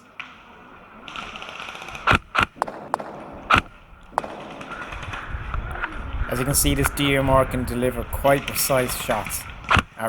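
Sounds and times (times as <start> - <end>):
faint clicks: 0.0 - 7.5, 8.3 - 10.0
airsoft rifle shots: 1.1 - 7.0.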